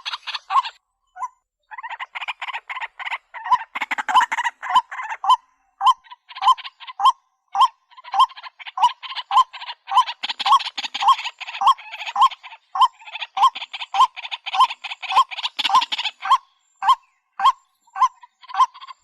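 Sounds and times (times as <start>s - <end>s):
waterhen harsh croaking call: 0.0s - 0.8s, 1.7s - 19.0s.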